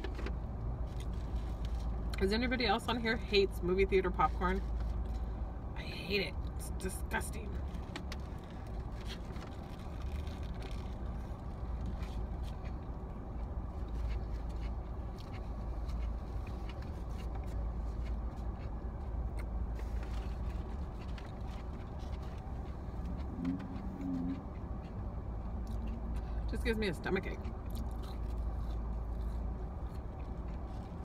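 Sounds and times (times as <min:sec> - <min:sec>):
faint clicks and rustles: 0:00.0 - 0:02.2, 0:04.2 - 0:05.5, 0:07.5 - 0:26.5
car cabin rumble: 0:00.0 - 0:31.0.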